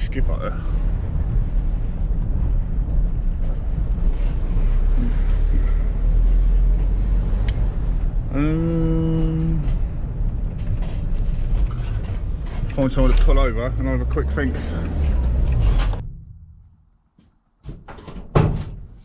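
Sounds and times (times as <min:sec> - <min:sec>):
van engine and road rumble: 0:00.0 - 0:17.0.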